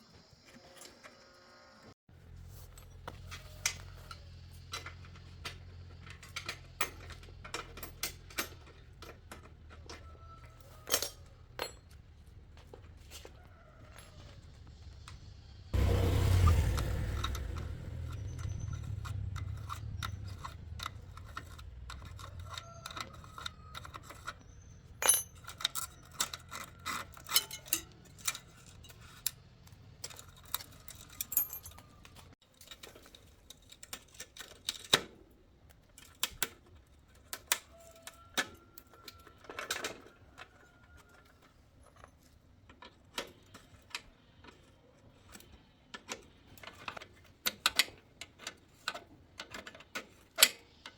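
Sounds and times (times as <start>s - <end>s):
hand tools clinking on metal parts: 2.6s - 13.2s, 17.2s - 35.2s
low hum: 14.9s - 22.3s.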